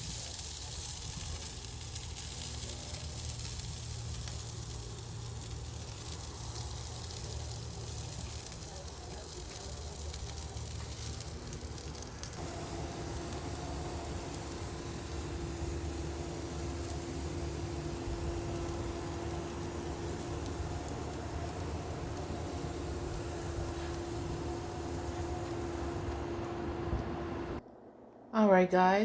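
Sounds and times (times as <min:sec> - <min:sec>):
vegetables sizzling on a grill: 0:00.0 - 0:27.4.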